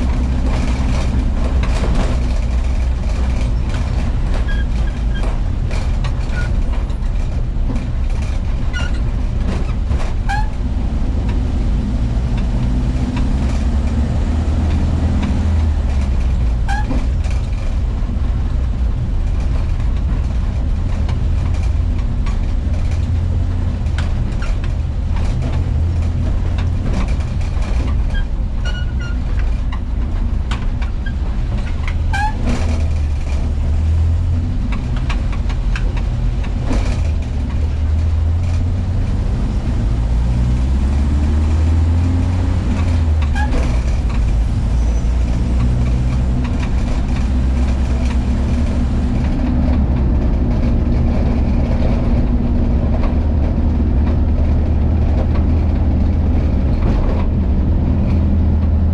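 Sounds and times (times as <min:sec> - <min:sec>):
clicks and rattles: 0:00.0 - 0:11.5, 0:12.4 - 0:38.7
van engine droning: 0:00.0 - 0:58.9.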